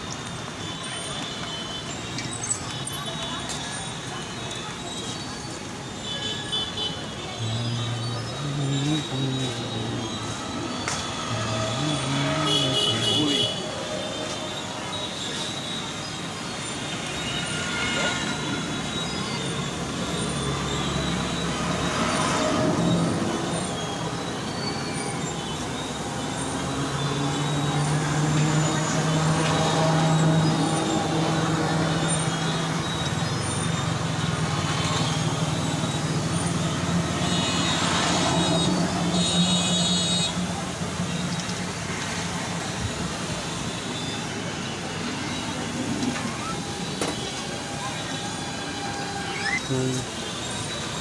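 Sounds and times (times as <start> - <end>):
passing traffic hum: 0.0 - 51.0
people's voices: 2.2 - 15.7, 44.8 - 51.0
vehicle engine humming: 6.5 - 14.5.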